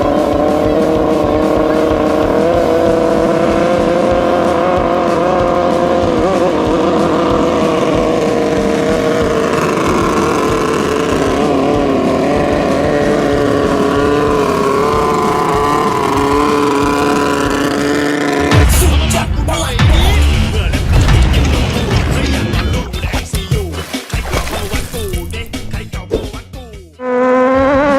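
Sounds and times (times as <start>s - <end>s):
speedboat engines howling: 0.0s - 18.7s.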